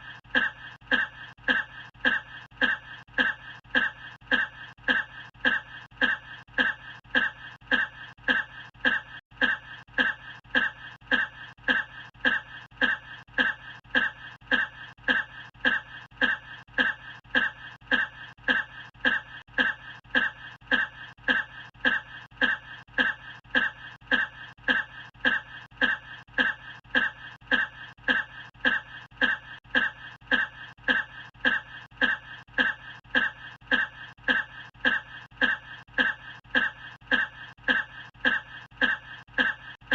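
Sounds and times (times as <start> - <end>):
short cough looped: 0.0 - 39.9.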